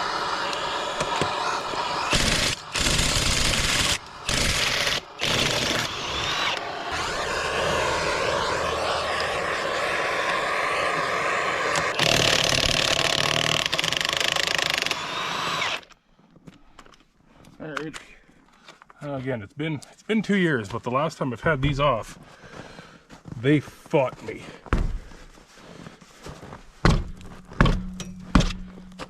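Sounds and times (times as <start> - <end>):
torch flame hissing: 0.0 - 14.0.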